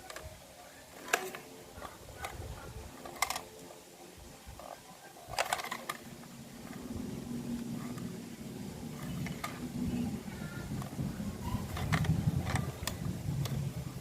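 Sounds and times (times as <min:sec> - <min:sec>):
plastic toy truck clicks: 0:00.0 - 0:00.3, 0:00.9 - 0:03.8, 0:04.6 - 0:06.8, 0:09.0 - 0:09.6, 0:10.8 - 0:13.6.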